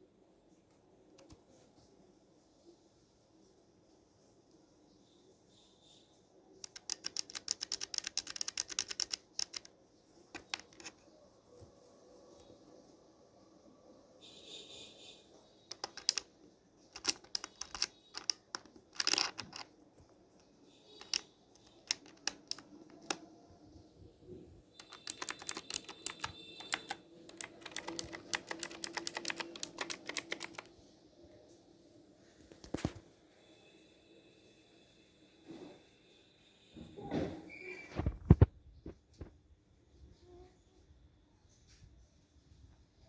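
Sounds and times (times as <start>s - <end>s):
clicky mechanical keyboard typing: 6.6s - 9.7s, 10.3s - 11.0s, 15.7s - 16.3s, 16.9s - 20.1s, 21.0s - 23.3s, 24.8s - 30.7s.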